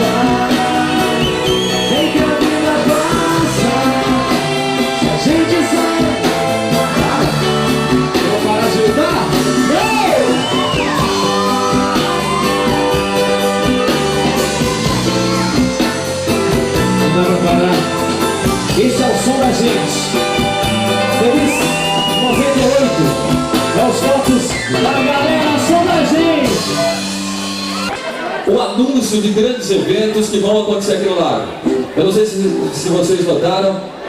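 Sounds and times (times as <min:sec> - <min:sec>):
person singing: 0:00.0 - 0:15.0
steady drum beat: 0:00.0 - 0:27.9
guitar: 0:00.0 - 0:34.0.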